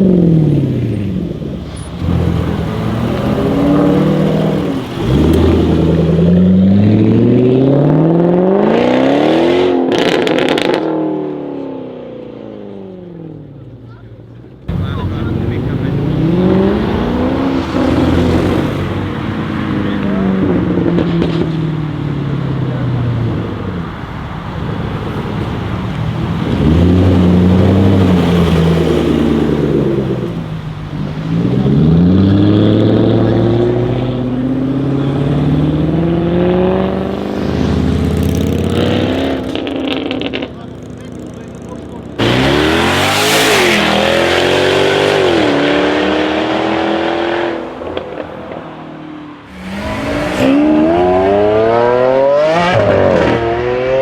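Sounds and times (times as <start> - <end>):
car engine accelerating hard: 0.0 - 12.0, 14.7 - 54.0.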